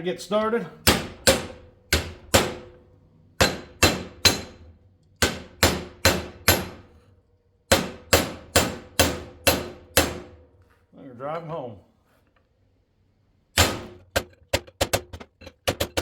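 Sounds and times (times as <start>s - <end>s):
hammer striking metal: 0.8s - 2.8s, 3.4s - 7.0s, 7.7s - 10.4s, 13.6s - 14.9s.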